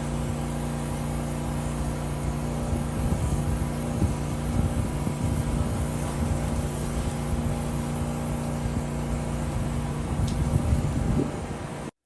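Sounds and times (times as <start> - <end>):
water spray hissing: 0.0 - 11.8
pressure washer engine running: 0.0 - 11.9.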